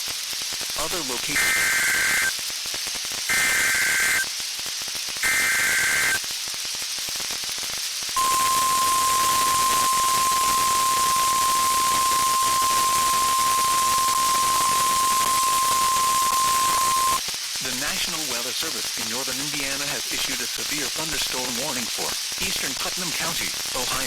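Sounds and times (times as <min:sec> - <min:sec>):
radio hiss: 0:00.8 - 0:02.4, 0:03.3 - 0:04.3, 0:05.2 - 0:06.2, 0:08.2 - 0:24.0
steady warning alarm tone: 0:01.4 - 0:02.3, 0:03.3 - 0:04.2, 0:05.2 - 0:06.2, 0:08.2 - 0:17.2
two-tone digital warble bursts: 0:08.2 - 0:17.2.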